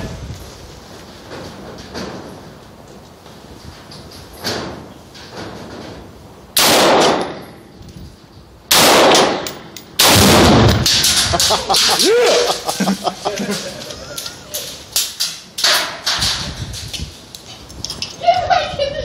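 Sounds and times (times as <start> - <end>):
loud gunshots: 6.6 - 7.4, 8.7 - 11.9.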